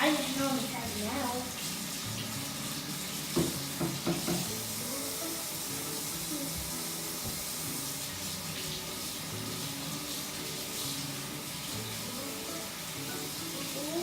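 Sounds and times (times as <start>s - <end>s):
tap water running into sink: 0.0s - 14.0s
knocks: 3.4s - 4.5s.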